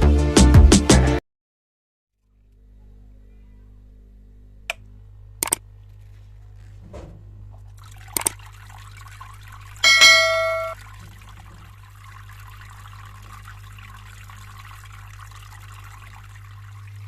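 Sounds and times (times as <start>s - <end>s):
sharp clicks: 5.4s - 5.6s
water trickling in fountain: 7.6s - 17.0s
loud brief ringing tone: 9.8s - 10.8s
low hum: 9.8s - 11.8s.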